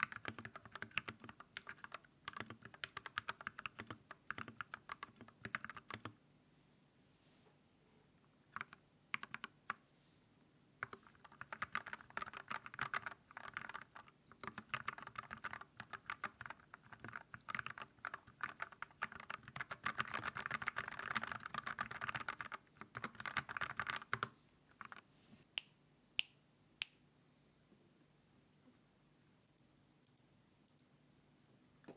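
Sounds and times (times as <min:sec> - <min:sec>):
keyboard typing: 0:00.0 - 0:06.2, 0:08.5 - 0:09.8, 0:10.8 - 0:25.0.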